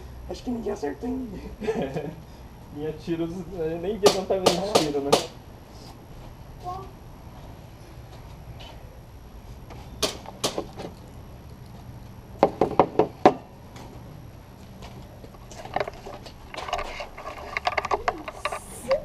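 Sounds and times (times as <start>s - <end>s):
sharp knocks or clicks: 4.0s - 5.4s, 10.0s - 11.0s.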